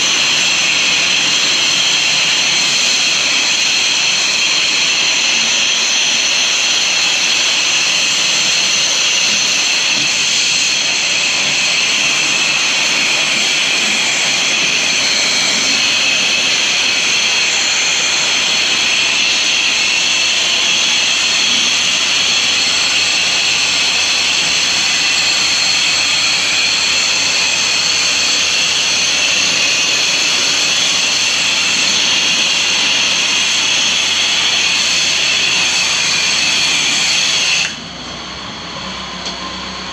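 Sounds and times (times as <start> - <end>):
pressure washer running: 0.0 - 39.9.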